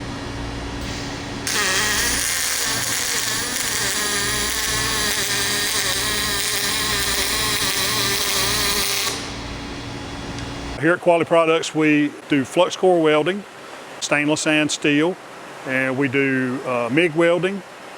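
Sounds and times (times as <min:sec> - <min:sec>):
low hum: 0:00.0 - 0:10.8
welding arc buzzing and hissing: 0:00.8 - 0:10.8.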